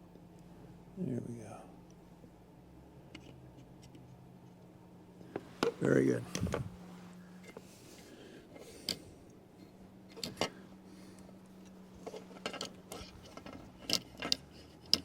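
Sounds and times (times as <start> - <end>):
faint steady hum: 0.0 - 15.0
small tools clicking and tapping: 11.6 - 15.0.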